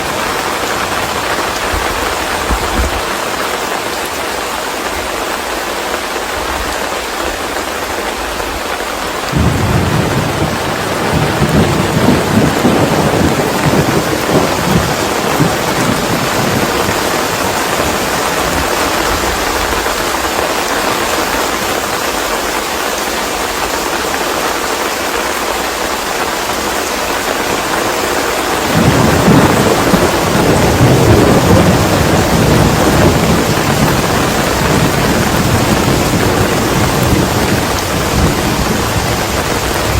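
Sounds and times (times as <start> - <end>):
thunder rolling: 0.0 - 3.2, 9.3 - 20.4, 28.6 - 39.9
steady rain falling: 0.0 - 39.9.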